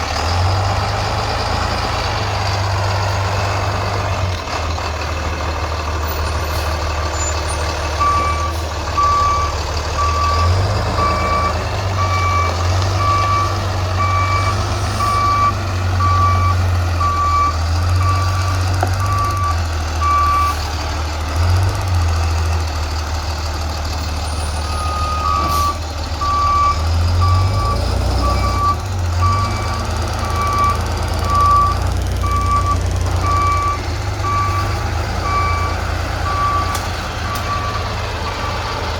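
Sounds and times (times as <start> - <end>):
low engine rumble: 0.0 - 38.9
reversing alarm beeping: 7.1 - 20.6, 24.6 - 38.7.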